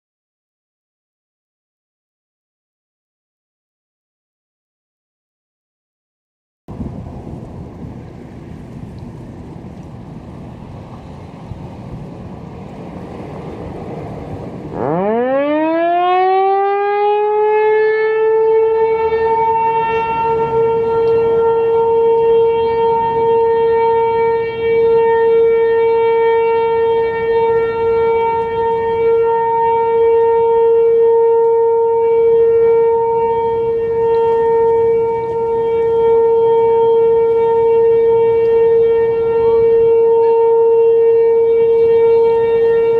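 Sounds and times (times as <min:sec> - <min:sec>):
wind on microphone: 0:06.7 - 0:42.9
warning siren winding up: 0:14.7 - 0:42.9.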